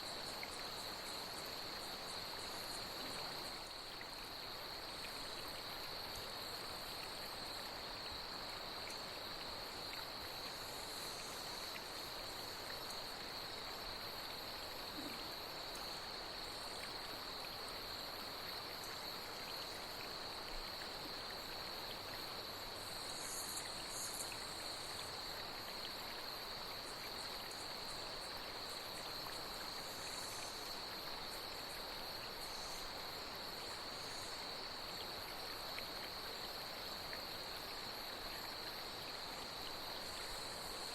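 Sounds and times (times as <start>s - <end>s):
insects trilling: 0.0s - 40.9s
stream water flowing: 0.0s - 40.9s
high insect chirps: 22.9s - 25.2s.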